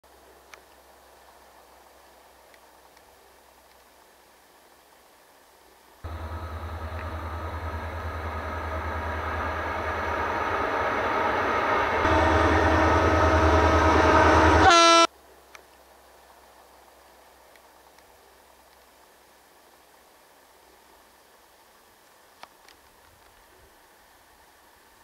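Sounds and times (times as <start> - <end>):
diesel engine rumble: 6.1 - 14.7
locomotive horn blowing: 6.1 - 15.1.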